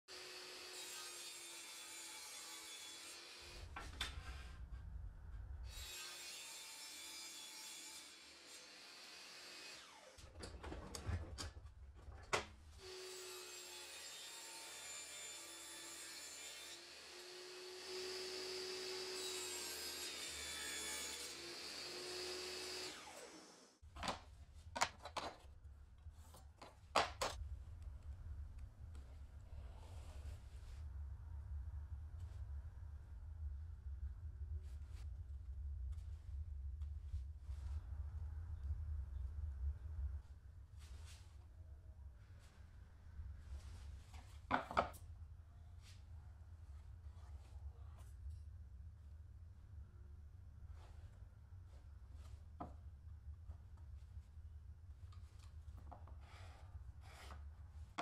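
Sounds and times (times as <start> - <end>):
power tool working wood: 7.9 - 10.2, 12.8 - 23.8.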